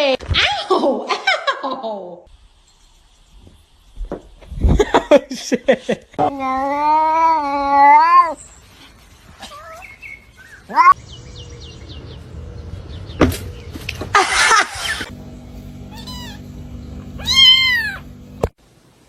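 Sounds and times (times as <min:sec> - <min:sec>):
cats meowing: 0:06.4 - 0:08.4, 0:10.6 - 0:11.0, 0:15.9 - 0:16.4, 0:17.2 - 0:18.1.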